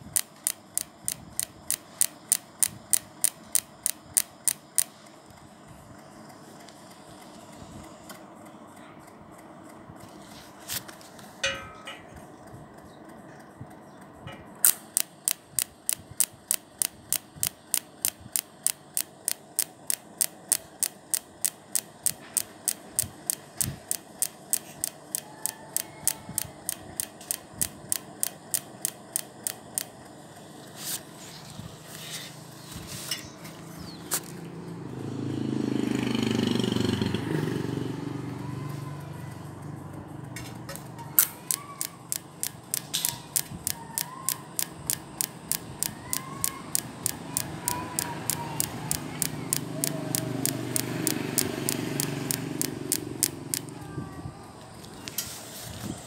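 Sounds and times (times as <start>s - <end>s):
welding machine clicking: 0.0s - 5.5s, 10.8s - 12.2s, 14.4s - 31.2s, 40.3s - 53.8s.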